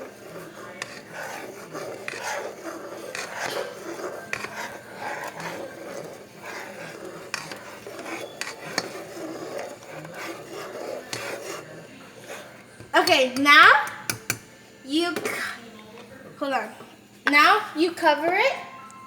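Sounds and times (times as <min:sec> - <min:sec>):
spoon scraping cooking pot: 0:00.0 - 0:14.5
spoon clicking against pot: 0:13.0 - 0:14.4.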